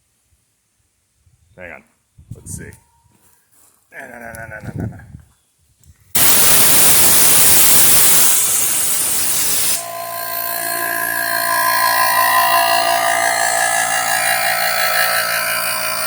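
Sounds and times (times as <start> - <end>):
computer fans whirring: 9.8 - 16.0.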